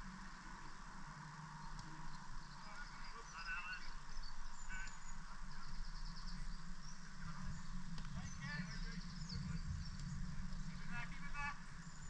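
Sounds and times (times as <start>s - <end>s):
low hum: 0.0s - 12.0s
honking bird calls: 2.6s - 7.6s.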